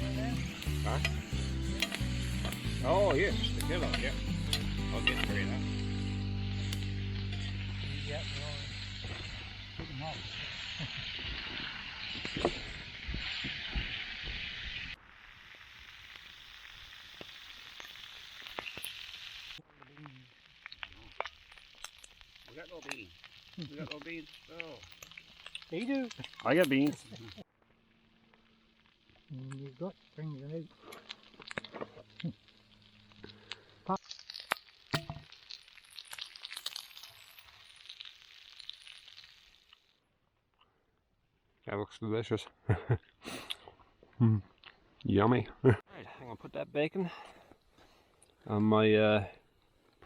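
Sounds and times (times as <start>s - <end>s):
bacon sizzling in a pan: 0.0s - 40.0s
fire crackling: 0.0s - 40.8s, 47.0s - 50.0s.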